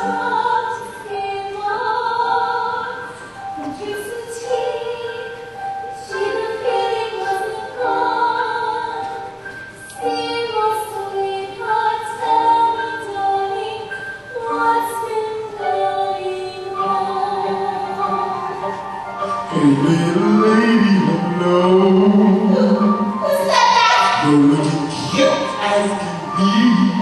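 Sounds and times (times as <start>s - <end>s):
woman singing slow song: 0.0s - 9.3s, 10.0s - 18.8s
backing music: 0.0s - 27.0s.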